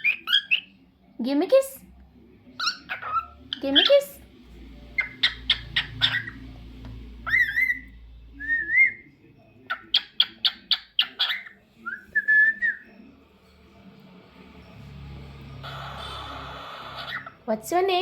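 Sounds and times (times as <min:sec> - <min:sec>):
cockatiel whistling: 0:07.2 - 0:09.0, 0:09.7 - 0:13.0, 0:15.6 - 0:17.3.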